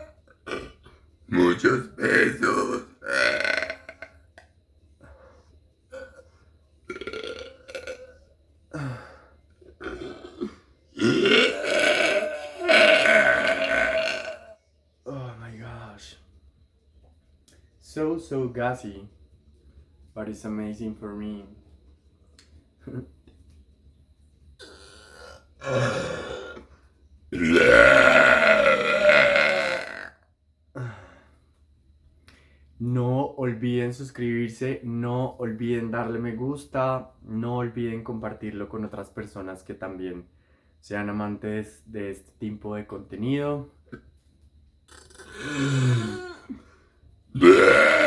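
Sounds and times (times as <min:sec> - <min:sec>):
woman burping: 0:00.0 - 0:00.9, 0:02.0 - 0:04.1, 0:05.9 - 0:06.2, 0:06.9 - 0:09.1, 0:09.8 - 0:14.6, 0:24.6 - 0:26.7, 0:27.4 - 0:30.2, 0:44.9 - 0:46.6, 0:47.4 - 0:48.0.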